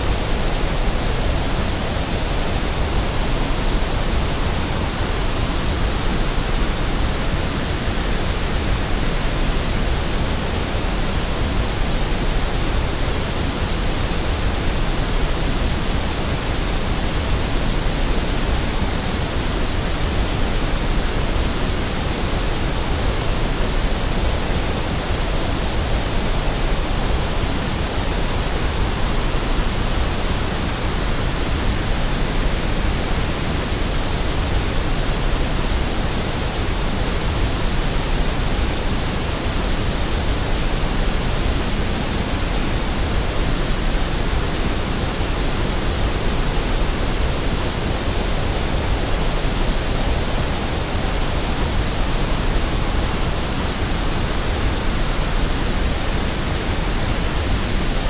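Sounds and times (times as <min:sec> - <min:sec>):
steady white noise hiss: 0:00.0 - 0:58.0.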